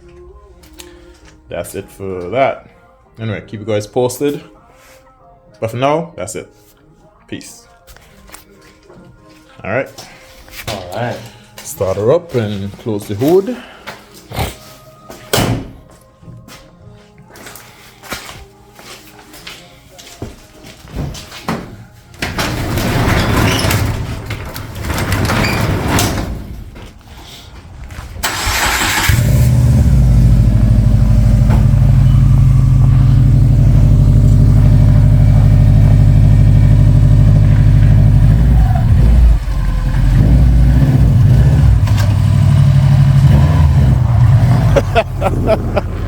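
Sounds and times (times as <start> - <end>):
car engine running loud: 29.1 - 46.0.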